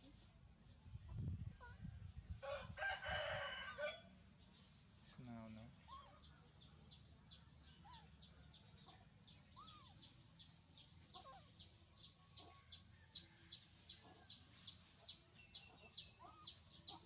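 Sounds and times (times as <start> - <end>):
soft low bird calls: 5.3 - 17.0
high bird chirps: 5.8 - 12.5.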